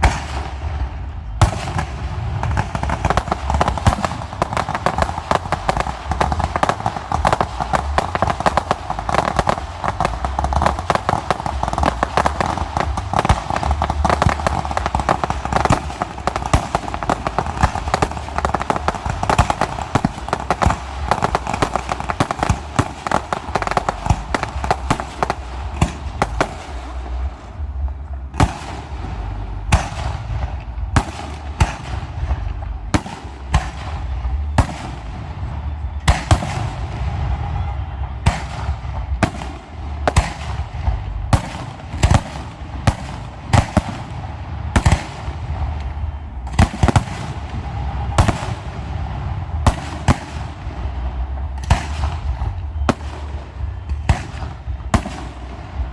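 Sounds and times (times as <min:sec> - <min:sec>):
fireworks crackling: 0:00.0 - 0:55.9
low rumble: 0:00.0 - 0:55.9.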